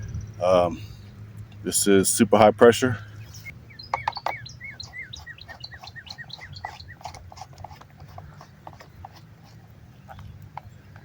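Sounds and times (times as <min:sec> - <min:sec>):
small bird chirping: 0:03.2 - 0:11.0.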